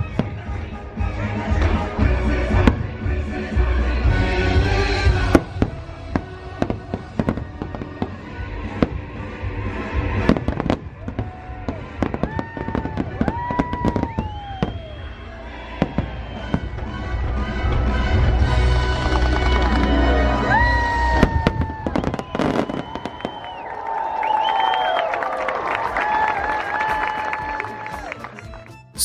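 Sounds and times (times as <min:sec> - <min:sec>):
fireworks bangs and crackles: 0:05.1 - 0:19.8, 0:21.0 - 0:23.5
whistling fireworks: 0:10.1 - 0:19.9, 0:20.6 - 0:25.2
show music: 0:25.9 - 0:29.0.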